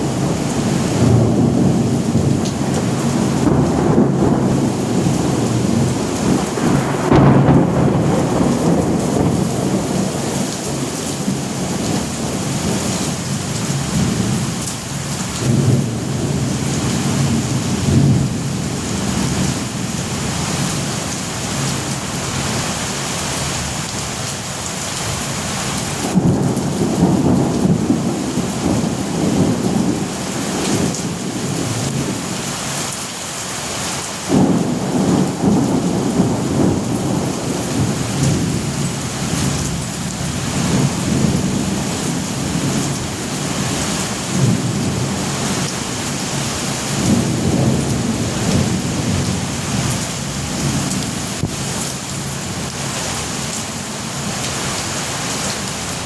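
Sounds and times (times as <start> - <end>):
rolling thunder: 0.0 - 22.6, 25.8 - 32.4, 34.3 - 52.8
steady rain: 0.0 - 56.0
thunder clap: 0.2 - 13.2, 26.0 - 32.2, 34.3 - 43.6, 46.9 - 51.6.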